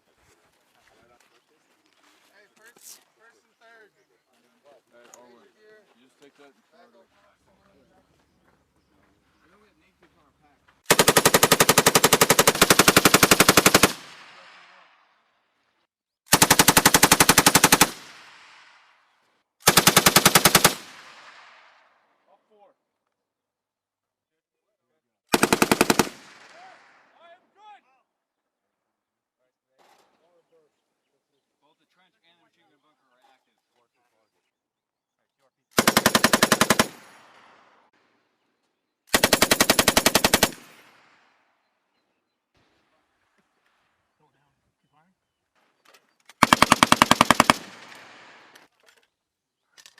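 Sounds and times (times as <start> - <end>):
machine gun bursts: 10.9 - 14.1, 16.3 - 18.1, 19.6 - 21.0, 25.3 - 26.3, 35.8 - 37.1, 39.1 - 40.8, 46.3 - 48.6.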